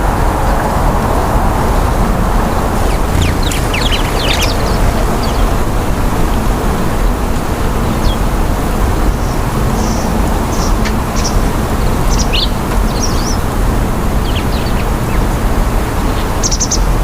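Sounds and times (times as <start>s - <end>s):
road traffic noise: 0.0s - 17.0s
high bird chirps: 2.8s - 5.9s.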